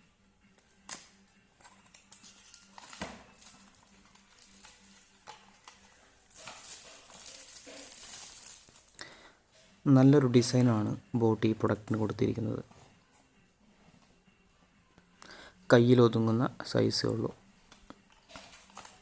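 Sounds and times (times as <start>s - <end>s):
plastic packaging rustling: 1.6s - 9.2s, 16.9s - 19.0s.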